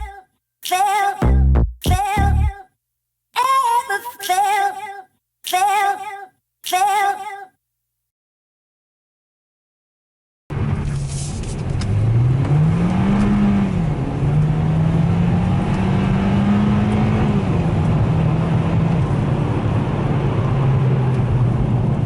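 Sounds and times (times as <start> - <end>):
car engine accelerating: 10.5 - 22.0.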